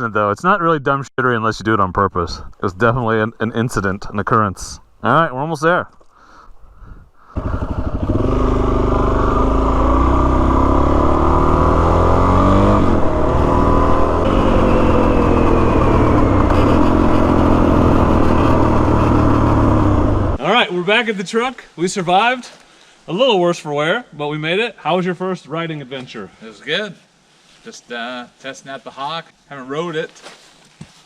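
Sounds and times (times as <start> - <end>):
wind noise: 6.6 - 7.9
motorcycle engine running: 7.4 - 20.4.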